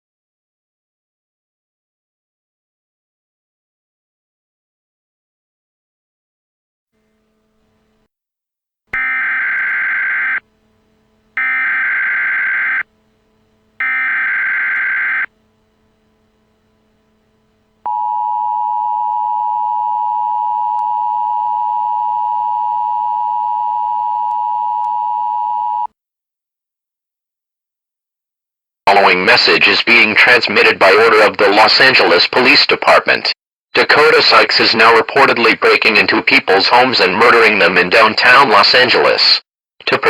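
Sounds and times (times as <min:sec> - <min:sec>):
warbling digital data bursts: 0:09.0 - 0:10.4, 0:11.4 - 0:12.8, 0:13.8 - 0:15.3
two-tone attention signal: 0:09.0 - 0:10.5, 0:11.4 - 0:12.9, 0:13.8 - 0:15.3, 0:17.9 - 0:25.9.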